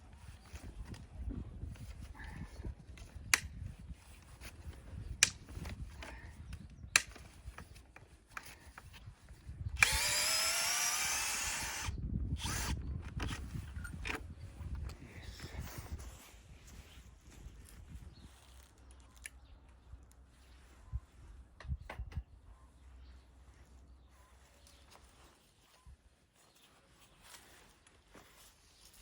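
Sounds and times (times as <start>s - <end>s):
power drill running: 9.8s - 12.8s
sharp clicks: 9.8s - 13.4s.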